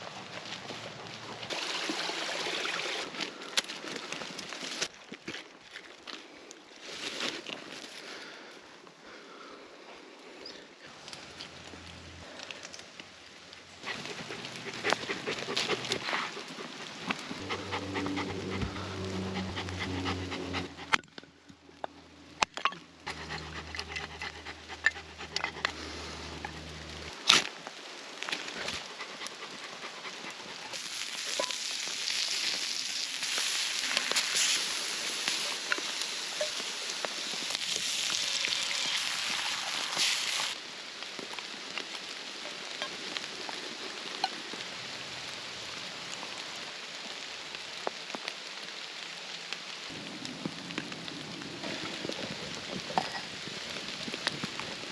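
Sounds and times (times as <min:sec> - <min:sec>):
dog panting: 0:13.8 - 0:21.0, 0:23.0 - 0:27.1, 0:28.7 - 0:30.8
low steady hum: 0:17.4 - 0:27.2
steady hiss: 0:30.6 - 0:41.2.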